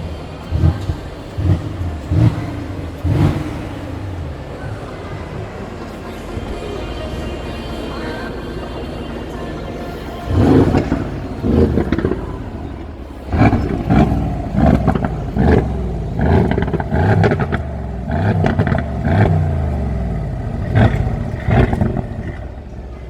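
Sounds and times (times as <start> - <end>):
exhaust crackles and pops: 0.0 - 5.9, 10.3 - 23.0
car engine revving: 0.0 - 23.0.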